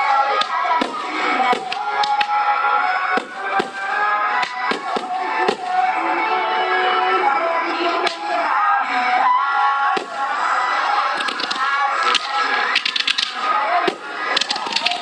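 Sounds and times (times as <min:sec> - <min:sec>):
music playing: 0:00.0 - 0:15.0
fireworks bangs: 0:03.2 - 0:03.9, 0:10.0 - 0:10.4.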